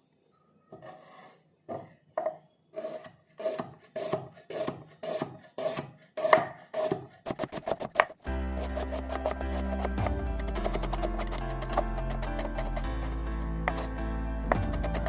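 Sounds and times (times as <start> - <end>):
knife scraping through vegetables: 0.8 - 1.5, 2.7 - 13.9, 14.6 - 15.0
rapid knife chops: 2.8 - 12.8, 14.6 - 15.0.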